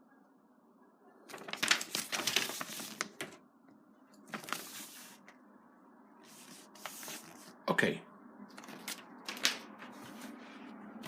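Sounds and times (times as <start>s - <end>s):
packaging crackling and crinkling: 1.3s - 3.4s.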